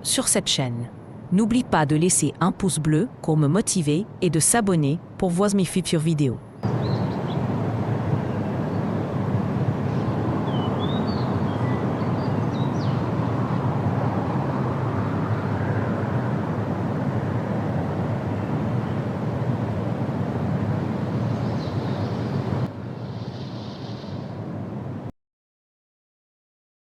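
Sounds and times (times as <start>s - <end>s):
waterfall roaring: 6.6s - 22.7s.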